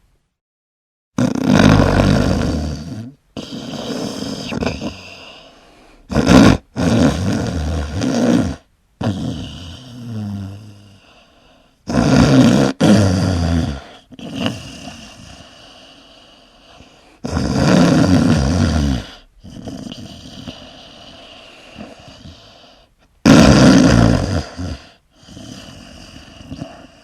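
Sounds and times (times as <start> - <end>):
person snoring: 1.2 - 27.0
quiet breathing: 2.9 - 6.1, 9.3 - 11.9, 13.7 - 17.3, 18.9 - 23.1, 24.4 - 27.0.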